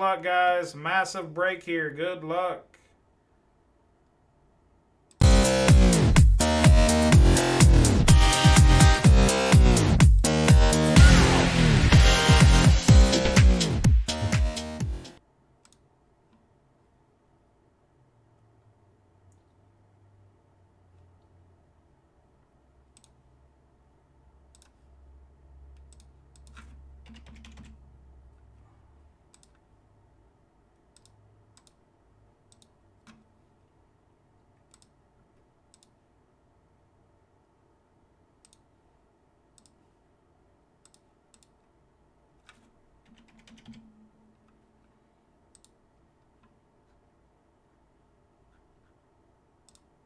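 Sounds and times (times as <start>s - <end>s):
faint sharp clicks: 45.5s - 45.8s, 49.6s - 49.9s.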